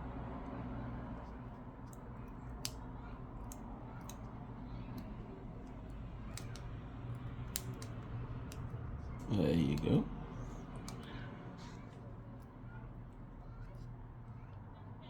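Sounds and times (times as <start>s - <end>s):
small clicks and taps of tools: 1.2s - 12.5s.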